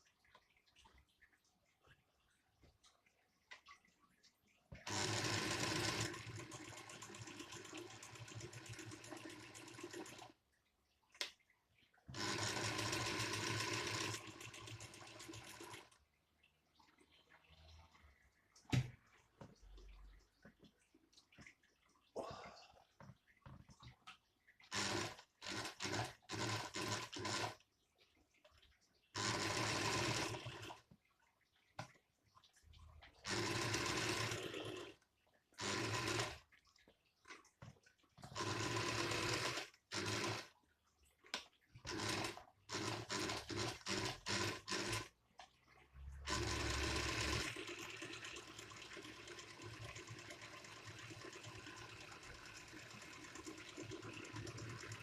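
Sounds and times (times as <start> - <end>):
sewing machine running: 4.8 - 10.3, 12.1 - 15.9, 24.7 - 27.6, 29.2 - 30.8, 33.2 - 35.0, 35.6 - 36.4, 38.3 - 40.5, 41.8 - 45.1, 46.2 - 55.0.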